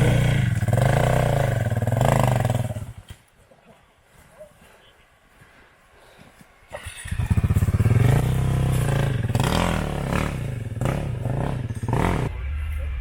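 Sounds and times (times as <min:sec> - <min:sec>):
dirt bike engine revving: 0:00.0 - 0:03.1, 0:06.8 - 0:12.8.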